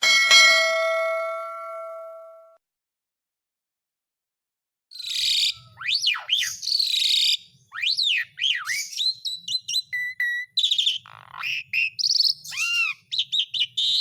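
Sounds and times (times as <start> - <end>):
starling singing: 4.9 - 14.0.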